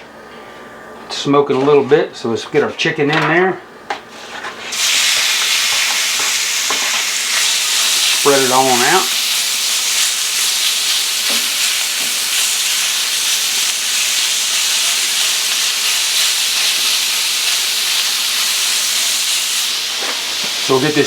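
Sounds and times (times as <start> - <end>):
chicken sizzling in a skillet: 4.7 - 21.0.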